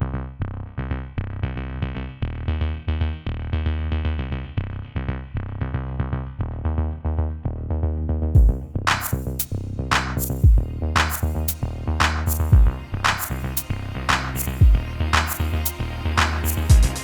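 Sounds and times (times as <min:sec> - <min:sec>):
electronic music with synthesizer: 0:08.4 - 0:17.0.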